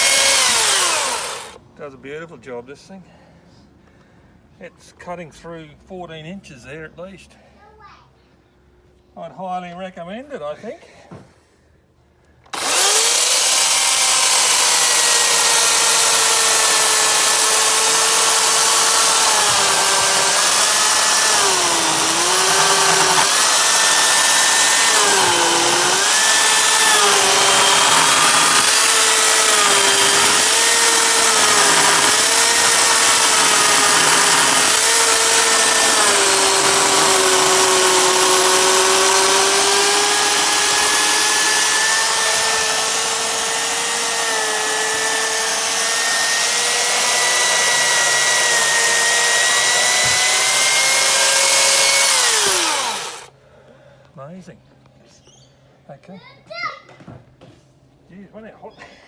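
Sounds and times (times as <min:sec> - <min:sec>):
electric chainsaw cutting log: 0:00.0 - 0:01.6, 0:12.5 - 0:53.3.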